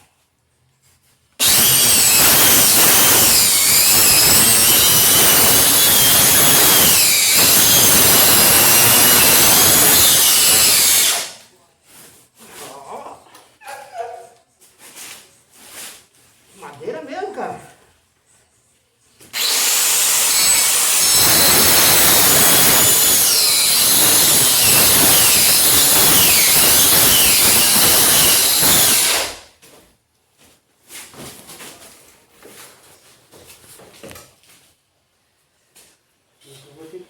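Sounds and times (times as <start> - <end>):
power tool motor whine: 1.4 - 11.4, 19.4 - 29.4.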